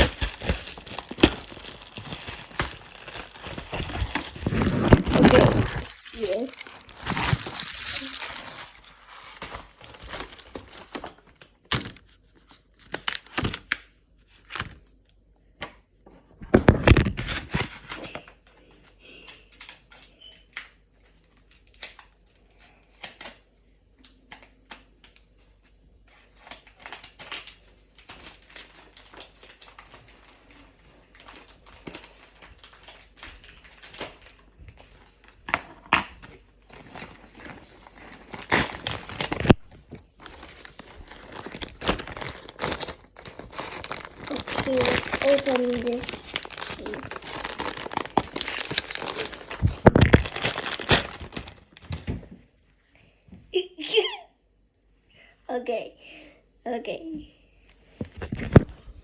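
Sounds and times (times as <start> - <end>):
packaging tearing and crinkling: 0.0 - 14.8, 16.4 - 18.2, 19.6 - 23.4, 26.1 - 52.1, 58.2 - 59.0.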